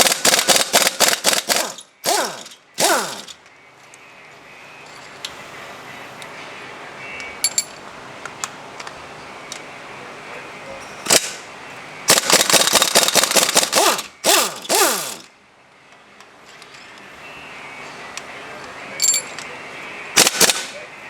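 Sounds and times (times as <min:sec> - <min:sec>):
ratchet wrench clicking: 0:00.0 - 0:03.4, 0:12.2 - 0:15.3.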